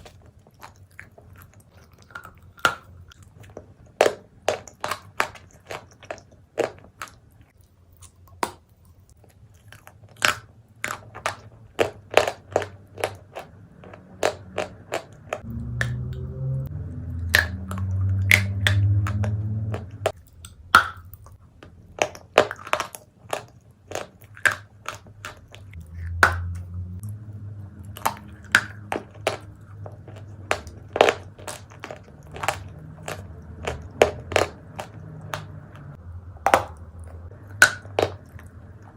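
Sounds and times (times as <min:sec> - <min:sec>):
crunching and chewing dry clay: 0:00.0 - 0:38.9
low hum: 0:15.4 - 0:21.4, 0:25.7 - 0:37.6.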